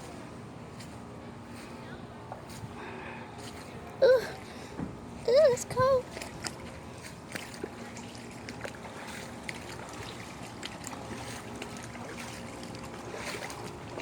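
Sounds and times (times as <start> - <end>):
floodwater sloshing around legs: 1.6 - 14.0
small splashes and drips: 6.0 - 14.0.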